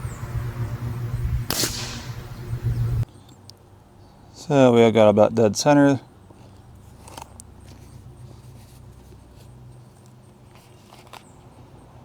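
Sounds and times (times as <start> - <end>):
low steady hum: 0.0 - 4.3
book pages rustling: 6.4 - 11.5.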